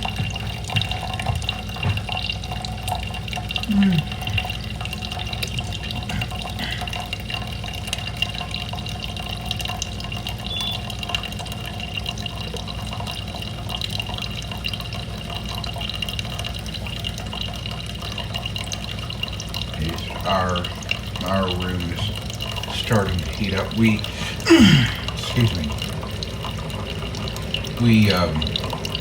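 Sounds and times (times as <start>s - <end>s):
running water rushing: 0.0s - 29.0s
faint steady high tone: 10.4s - 10.9s.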